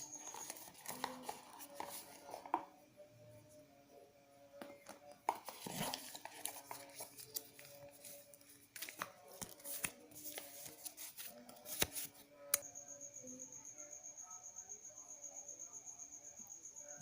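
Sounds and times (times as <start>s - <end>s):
packaging crinkling and rustling: 0.0s - 2.6s, 5.3s - 12.1s.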